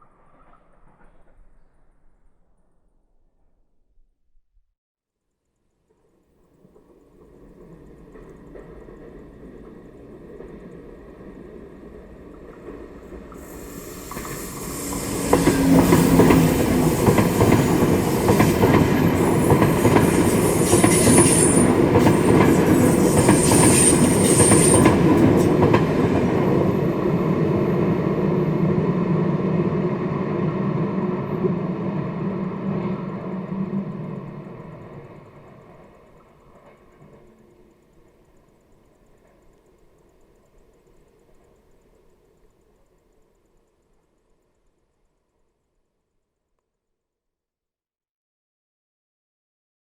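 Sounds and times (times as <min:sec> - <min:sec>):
train passing: 0:05.9 - 0:45.0
high wheel squeals: 0:13.4 - 0:25.5.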